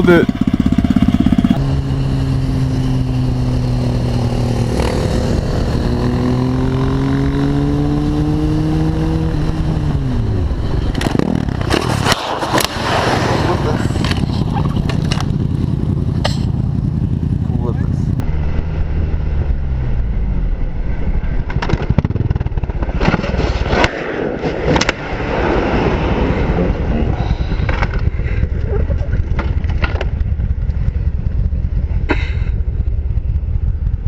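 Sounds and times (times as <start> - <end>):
motorcycle engine running: 0.0 - 11.9, 13.6 - 23.1, 27.1 - 34.0
clattering noise: 21.4 - 24.0.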